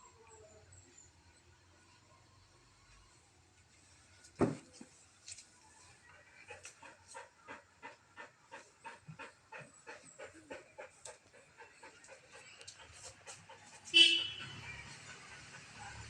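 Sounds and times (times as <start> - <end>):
dog panting: 6.0 - 16.0.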